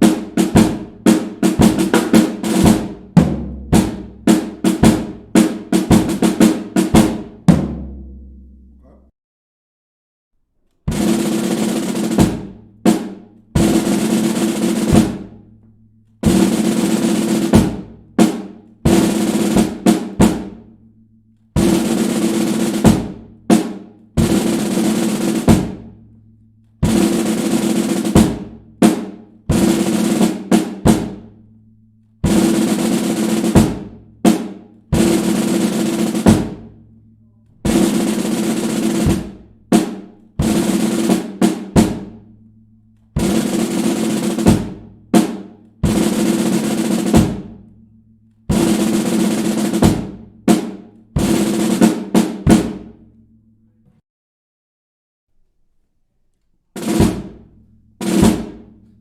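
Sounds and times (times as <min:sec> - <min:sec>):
snare drum rolls and strokes: 0:00.0 - 0:08.5, 0:10.9 - 0:15.4, 0:16.2 - 0:20.7, 0:21.6 - 0:26.0, 0:26.8 - 0:31.4, 0:32.2 - 0:36.8, 0:37.6 - 0:42.3, 0:43.2 - 0:47.7, 0:48.5 - 0:53.0, 0:56.8 - 0:59.0.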